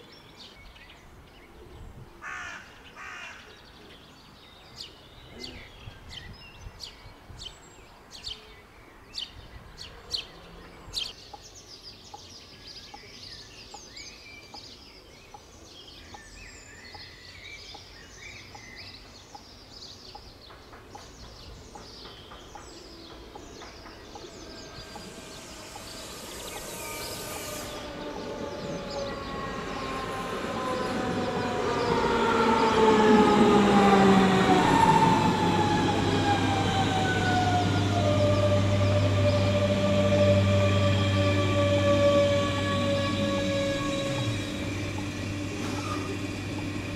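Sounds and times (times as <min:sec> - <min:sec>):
birds chirping: 0:00.0 - 0:46.9
electric train approaching: 0:20.4 - 0:46.9
whining tones sliding down: 0:23.8 - 0:46.9.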